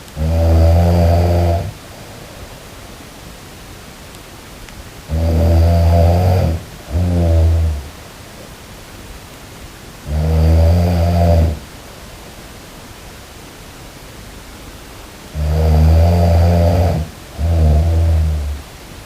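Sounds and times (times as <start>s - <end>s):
steady hiss: 0.0s - 19.0s
person snoring: 0.2s - 1.8s, 5.1s - 7.9s, 10.0s - 11.6s, 15.3s - 18.6s.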